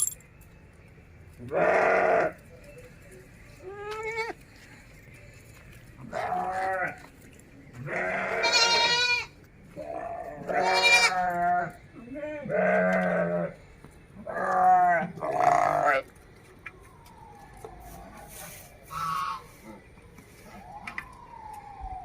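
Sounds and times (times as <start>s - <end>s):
goats bleating: 1.5s - 2.4s, 7.8s - 13.6s, 14.2s - 16.0s.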